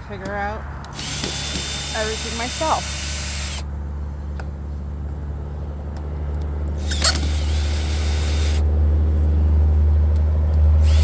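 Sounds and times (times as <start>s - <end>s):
low rumble: 5.2s - 11.0s.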